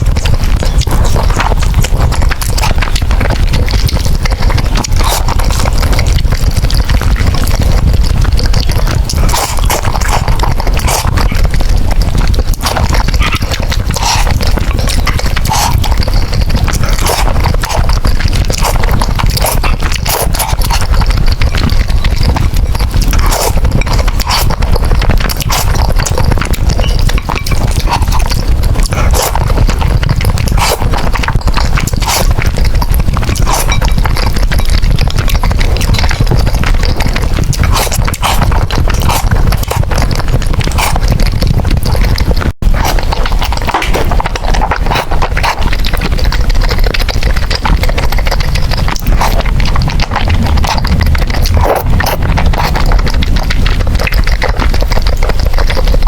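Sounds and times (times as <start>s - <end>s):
sharp mouth clicks: 0.0s - 56.0s
wet chewing and lip smacking: 0.0s - 56.0s.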